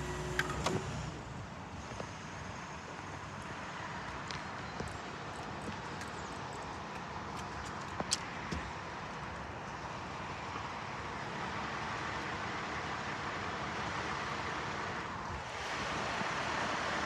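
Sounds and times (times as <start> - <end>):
truck mechanical running noise: 0.0 - 17.0.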